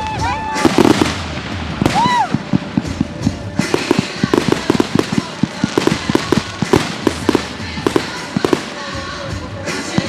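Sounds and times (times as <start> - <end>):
fireworks bangs and crackles: 0.0 - 10.0.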